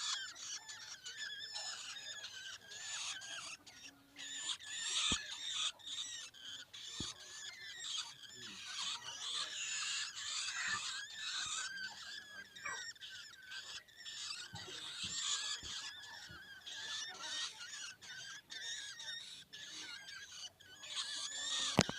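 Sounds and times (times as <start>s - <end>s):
nestlings begging calls: 0.0s - 21.9s.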